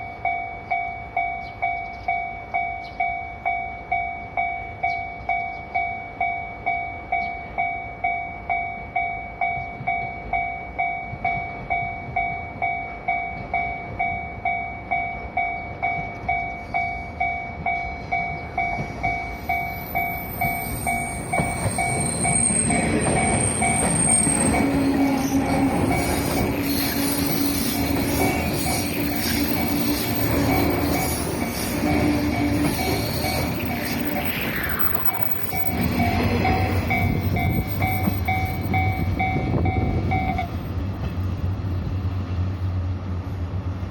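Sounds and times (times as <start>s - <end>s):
electric train passing: 0.0s - 43.9s
train wheel squeals: 15.0s - 40.7s
level crossing bell ringing: 15.9s - 34.3s, 34.9s - 40.5s.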